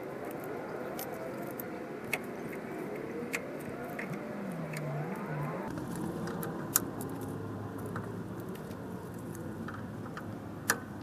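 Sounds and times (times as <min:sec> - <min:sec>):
sharp metallic clicks: 0:00.9 - 0:07.3.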